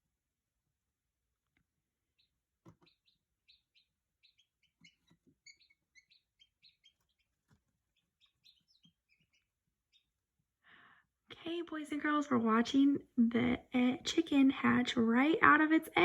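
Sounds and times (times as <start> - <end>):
chicks peeping: 2.2 - 10.1.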